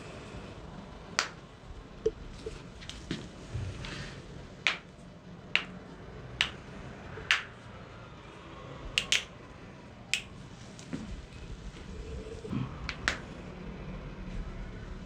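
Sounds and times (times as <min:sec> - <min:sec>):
spinal joints cracking: 0:12.8 - 0:13.3.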